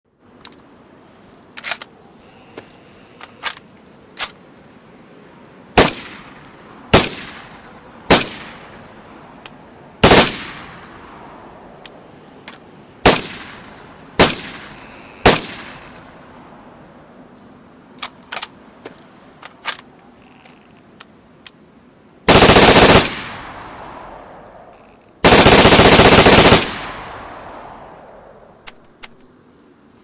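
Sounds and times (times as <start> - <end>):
gun clicks: 1.5 - 1.9, 2.6 - 4.4, 18.0 - 19.9, 28.6 - 29.4
loud gunshots with echo: 10.0 - 10.7, 13.0 - 15.8, 22.3 - 24.1, 25.2 - 27.9.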